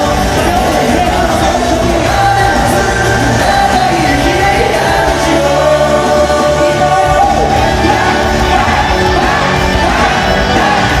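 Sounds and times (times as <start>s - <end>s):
pop music with singing: 0.0s - 11.0s.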